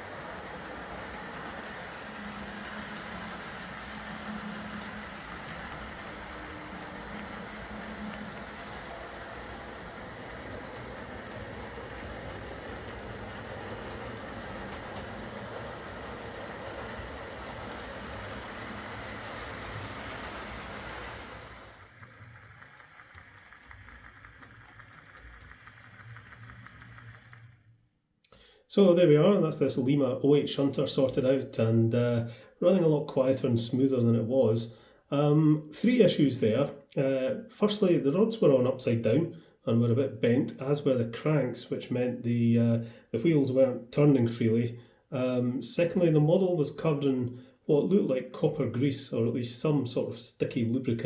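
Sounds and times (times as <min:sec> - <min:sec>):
model locomotive motor whirring: 0:00.0 - 0:27.9.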